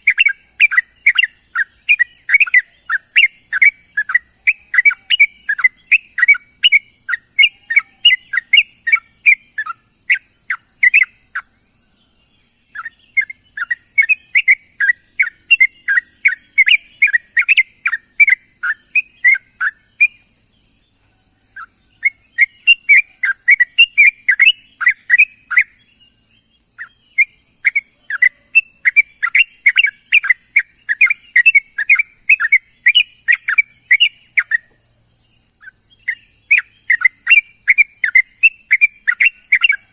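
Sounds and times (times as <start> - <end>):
steady high-pitched hiss: 0.0 - 39.9
bird bubbling chirps: 12.7 - 20.2.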